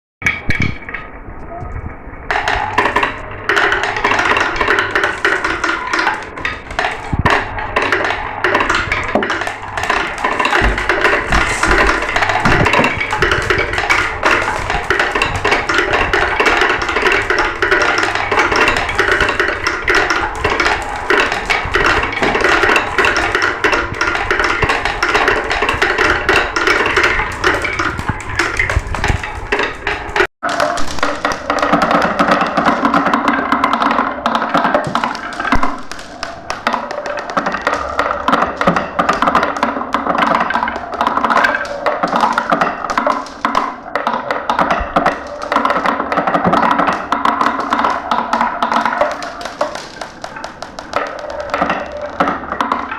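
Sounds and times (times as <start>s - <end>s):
glass marbles rolling and clattering: 2.3s - 52.9s.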